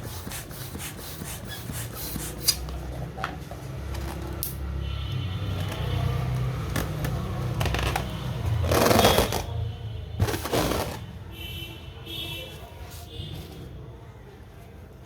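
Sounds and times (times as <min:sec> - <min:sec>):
plastic packaging rustling: 0:05.5 - 0:09.6, 0:10.2 - 0:11.1.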